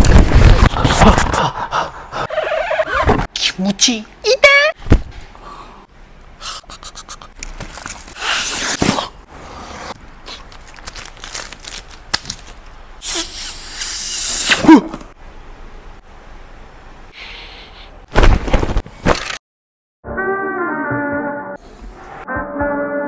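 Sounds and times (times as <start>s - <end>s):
packaging rustling and scraping: 10.3s - 12.7s.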